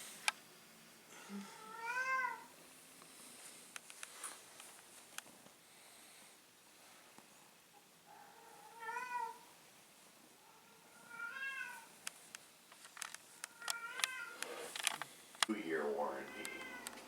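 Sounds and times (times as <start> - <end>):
cat meowing: 1.6 - 2.5, 8.2 - 9.4, 10.4 - 11.9, 13.3 - 14.4, 16.0 - 17.0.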